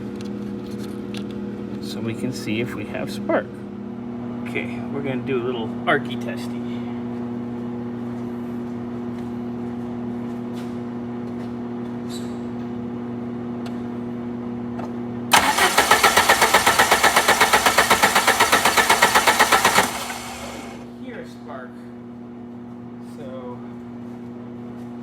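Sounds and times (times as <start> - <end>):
engine cranking without starting: 15.3 - 20.9.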